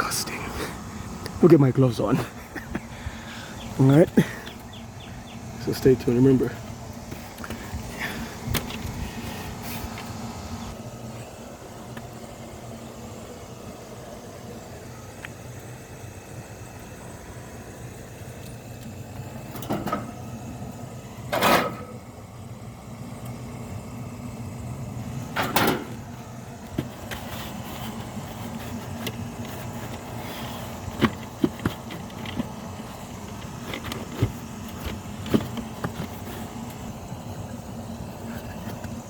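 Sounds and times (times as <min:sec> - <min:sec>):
steady low hum: 0:00.0 - 0:39.0
handling noise rustling: 0:25.4 - 0:37.4.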